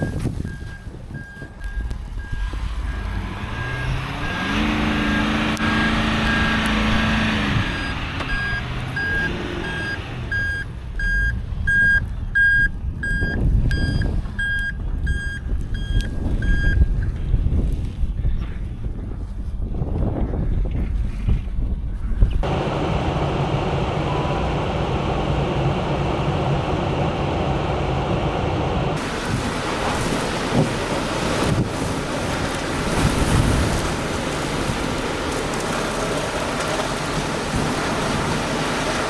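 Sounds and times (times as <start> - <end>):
reversing alarm beeping: 0.0 - 16.8
traffic rumble: 0.0 - 19.4, 22.3 - 39.0
wind: 0.0 - 39.0
deep engine note: 22.4 - 39.0.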